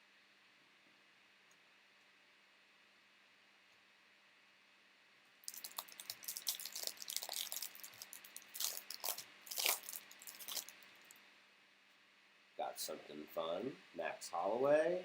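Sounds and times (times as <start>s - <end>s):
foil wrapper tearing and crinkling: 5.4s - 11.2s.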